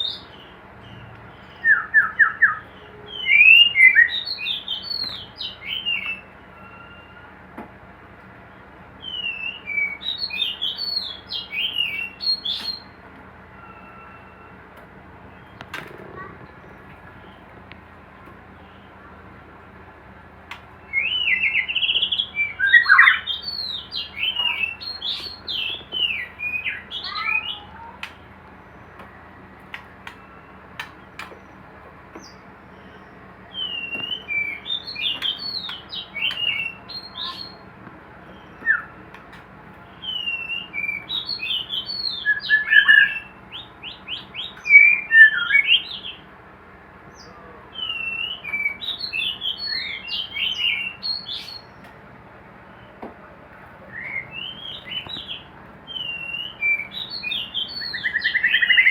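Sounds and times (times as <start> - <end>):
bird singing whistled phrases: 0.0 - 7.3, 9.0 - 14.6, 20.8 - 28.0, 32.2 - 37.6, 38.3 - 39.0, 39.9 - 46.2, 47.2 - 51.8, 53.9 - 58.9.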